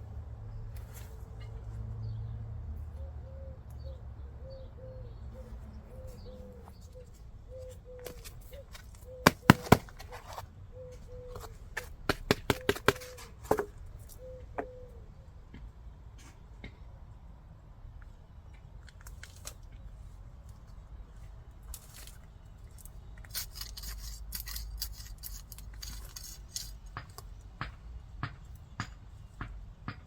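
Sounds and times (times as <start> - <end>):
sharp knocks: 9.3 - 10.2, 11.8 - 13.7.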